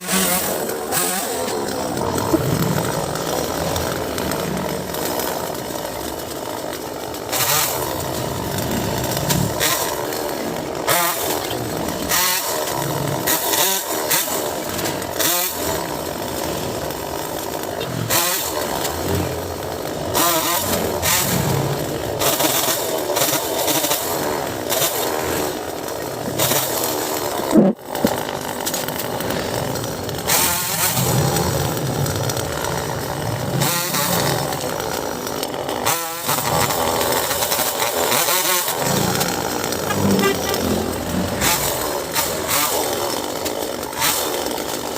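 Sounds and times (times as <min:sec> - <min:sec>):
chainsaw revving and cutting wood: 0:00.0 - 0:44.9.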